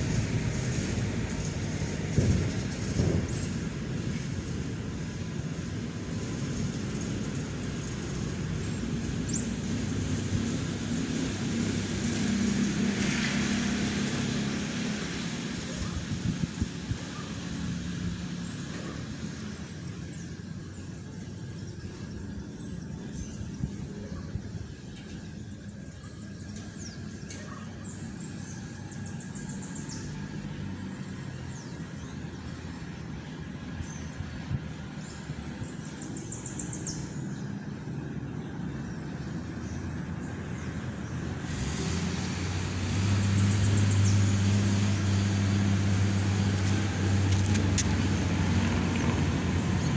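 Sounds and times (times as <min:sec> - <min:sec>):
road traffic rumble: 0:00.0 - 0:49.9
small birds chirping: 0:31.3 - 0:49.9.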